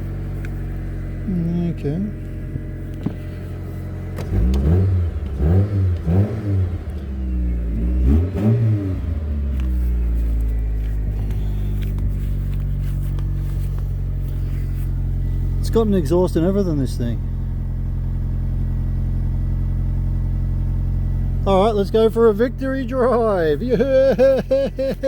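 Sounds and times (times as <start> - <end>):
petrol engine idling: 0.0 - 25.0
engine revving in quick blips: 2.2 - 15.9.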